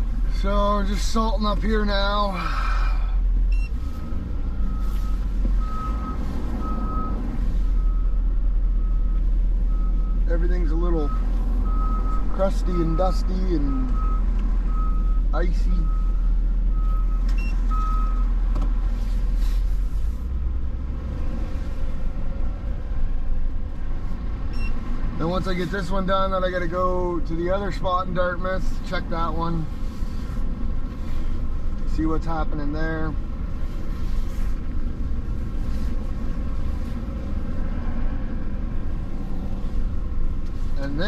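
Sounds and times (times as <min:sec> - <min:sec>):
truck engine rumbling: 0:00.0 - 0:41.0
reversing alarm beep: 0:03.5 - 0:07.2.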